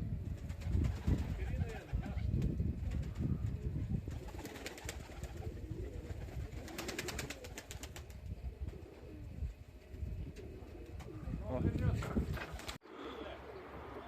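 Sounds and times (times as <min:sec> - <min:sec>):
wind rumble on microphone: 0:00.0 - 0:06.8, 0:07.9 - 0:12.8
pigeons cooing: 0:03.0 - 0:11.4, 0:12.5 - 0:14.0.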